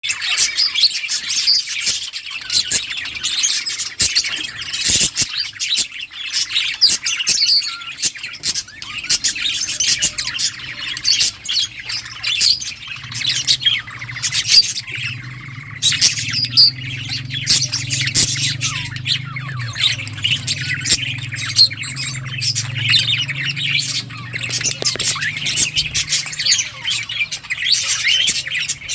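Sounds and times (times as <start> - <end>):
budgerigars chirping: 0.1 - 28.9
low steady hum: 12.7 - 27.7.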